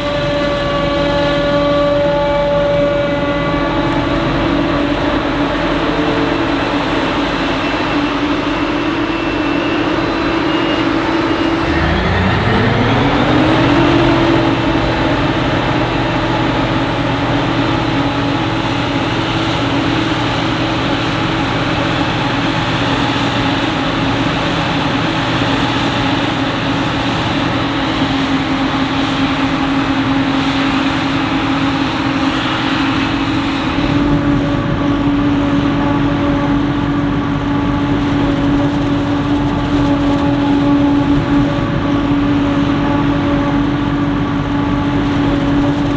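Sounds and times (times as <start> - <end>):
engine revving up: 0.0 - 34.6
heavy diesel engines running: 0.0 - 45.9.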